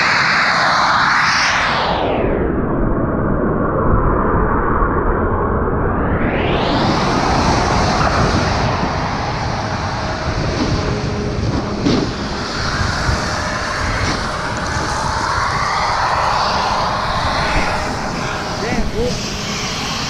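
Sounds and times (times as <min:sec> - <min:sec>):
wind on microphone: 0:01.6 - 0:20.0
snowboard sliding over snow: 0:06.8 - 0:20.0.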